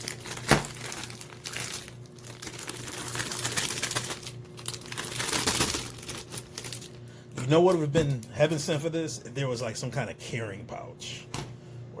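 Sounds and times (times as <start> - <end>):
crinkling and rustling: 0.0 - 8.4.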